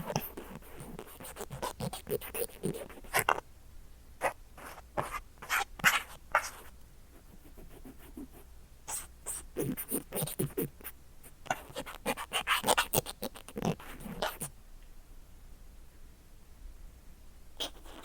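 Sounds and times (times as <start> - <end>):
cotton swab rubbing on microphone: 0.0 - 3.4, 4.2 - 14.5, 17.6 - 18.0.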